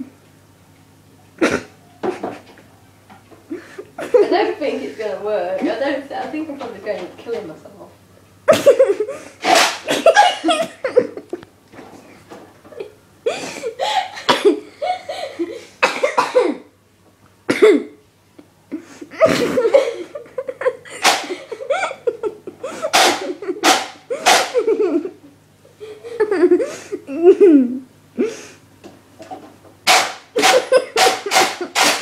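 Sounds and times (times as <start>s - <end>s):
people coughing: 1.4s - 2.3s, 8.5s - 11.2s, 13.3s - 14.7s, 15.8s - 16.7s, 17.5s - 18.0s, 19.1s - 20.2s, 30.4s - 31.9s
people laughing: 3.5s - 4.9s, 8.5s - 11.4s, 19.1s - 27.8s, 30.4s - 31.8s.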